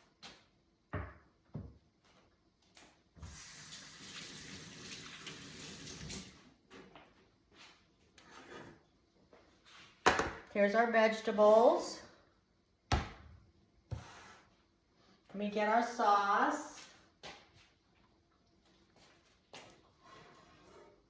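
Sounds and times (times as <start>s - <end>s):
kitchen tap running: 3.2s - 6.5s.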